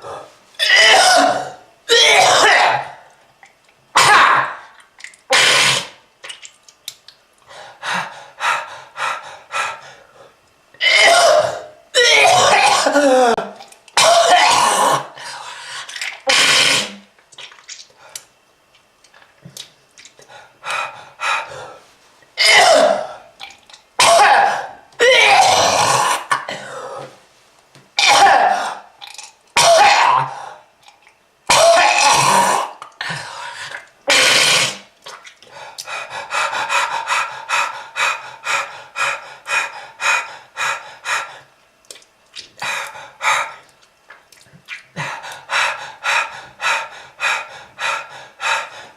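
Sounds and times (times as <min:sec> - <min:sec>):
person coughing hard: 0:00.6 - 0:03.0, 0:10.8 - 0:15.1, 0:22.4 - 0:23.2, 0:24.0 - 0:26.8, 0:28.0 - 0:28.8, 0:29.6 - 0:30.4, 0:31.5 - 0:32.7, 0:34.1 - 0:34.8
person clearing throat: 0:10.8 - 0:15.1, 0:22.4 - 0:23.1, 0:28.0 - 0:28.8, 0:31.5 - 0:32.8.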